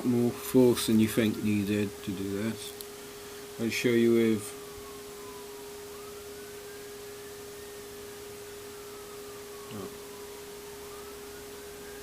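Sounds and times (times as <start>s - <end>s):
steady electronic tone: 3.5s - 12.0s.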